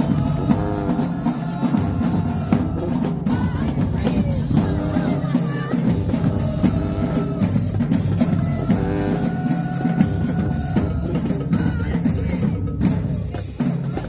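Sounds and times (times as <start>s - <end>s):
bass drums and snare drums: 0.0s - 14.0s.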